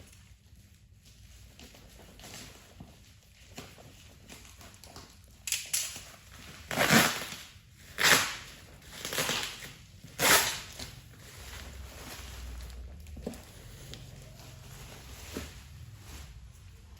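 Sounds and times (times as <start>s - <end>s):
packaging rustling: 6.0s - 16.9s.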